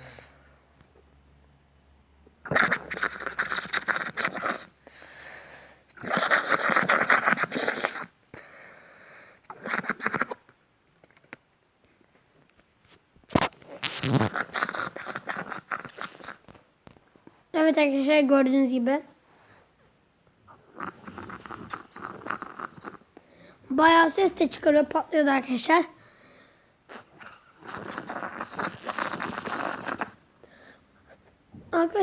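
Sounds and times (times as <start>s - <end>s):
foamy slime bubbles popping: 27.6s - 30.2s.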